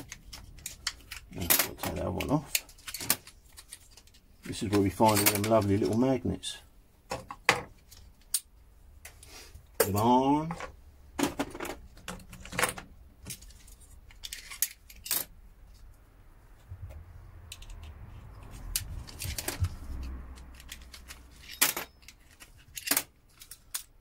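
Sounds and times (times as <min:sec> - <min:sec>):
small metal parts clicking: 0:00.0 - 0:06.0, 0:12.1 - 0:15.3, 0:17.5 - 0:24.0.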